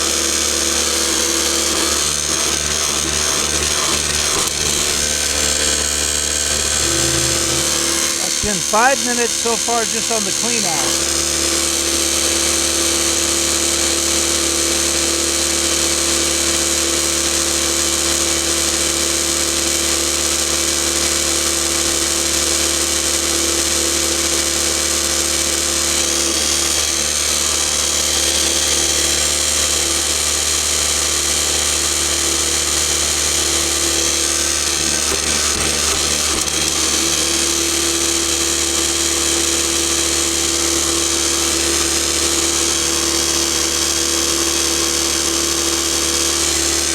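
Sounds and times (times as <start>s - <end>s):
electric motor hum: 6.6s - 8.2s.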